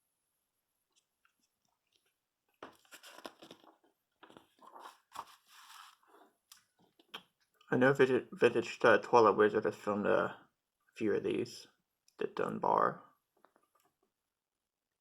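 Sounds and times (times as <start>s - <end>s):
paper pages rustling: 1.0s - 6.3s.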